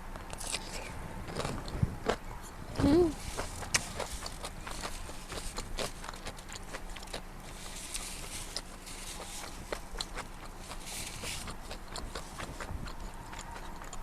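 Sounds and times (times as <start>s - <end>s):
person chewing food: 0.2s - 14.0s
wet mouth clicks: 3.4s - 7.2s.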